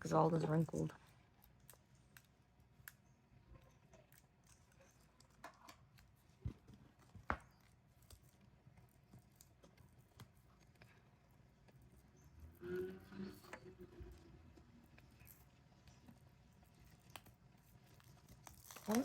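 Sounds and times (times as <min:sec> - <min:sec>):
plastic wrap crinkling: 0:15.0 - 0:19.0.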